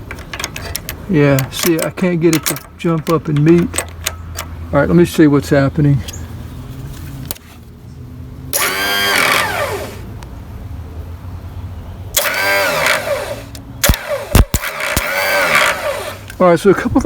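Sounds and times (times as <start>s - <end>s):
sharp clicks: 0.0s - 4.6s, 8.6s - 10.3s, 12.2s - 16.4s
electric starter motor whirring: 8.5s - 10.1s, 12.1s - 16.4s.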